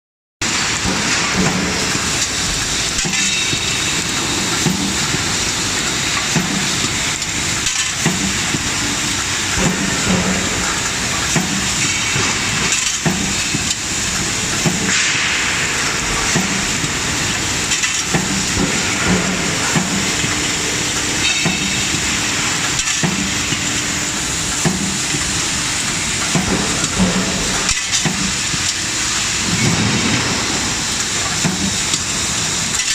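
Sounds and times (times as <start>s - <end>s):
machinery hissing: 0.4s - 32.8s
sharp metal clank: 17.7s - 23.3s.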